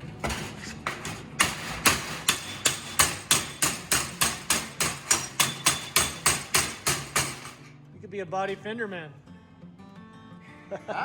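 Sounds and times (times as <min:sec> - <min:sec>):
hammer on metal: 0:00.2 - 0:07.6.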